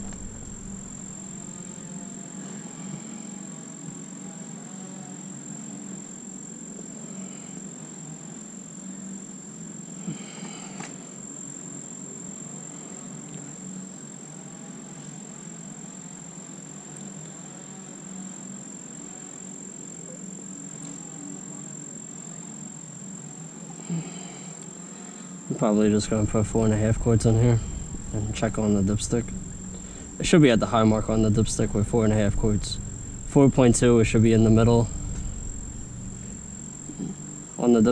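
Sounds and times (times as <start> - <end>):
low steady hum: 0.0 - 3.1, 25.5 - 37.9
crickets trilling: 0.0 - 37.9.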